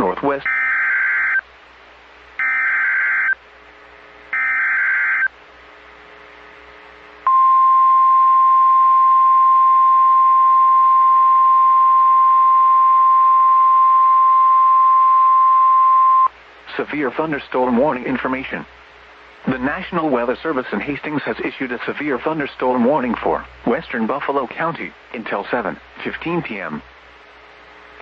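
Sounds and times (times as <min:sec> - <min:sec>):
steady warning alarm tone: 0:00.4 - 0:01.4, 0:02.4 - 0:03.4, 0:04.3 - 0:05.3.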